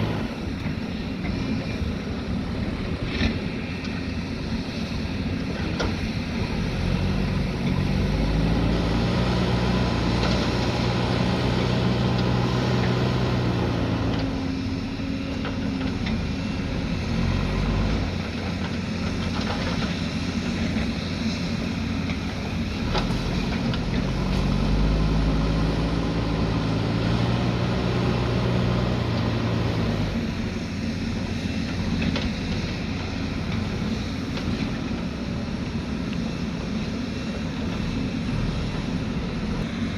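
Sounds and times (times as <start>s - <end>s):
diesel engine revving: 0.0s - 3.8s, 5.1s - 34.7s.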